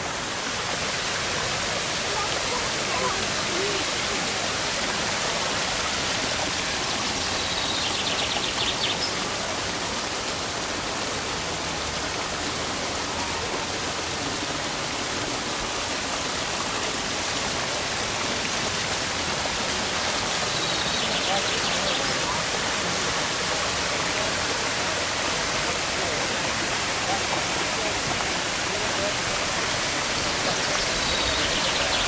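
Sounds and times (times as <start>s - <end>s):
running water rushing: 0.0s - 32.0s.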